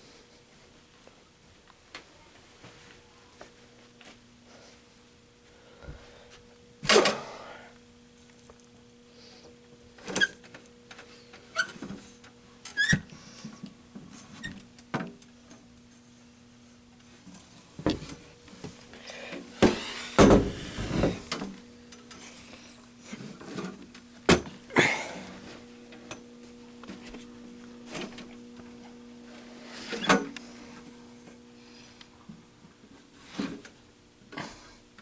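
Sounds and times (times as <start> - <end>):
faint electrical hum: 0.0 - 35.0.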